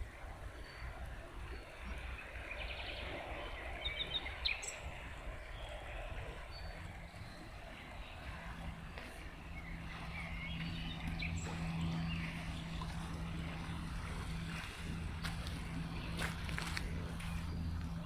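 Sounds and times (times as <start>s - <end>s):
river water running: 0.0s - 18.0s
small birds chirping: 1.5s - 18.0s
steady low hum: 4.8s - 18.0s.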